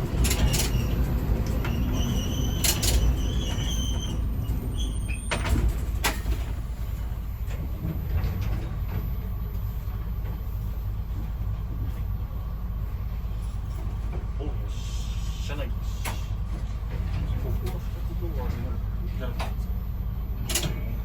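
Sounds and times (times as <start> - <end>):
diesel railcar engine rumble: 0.0 - 21.0.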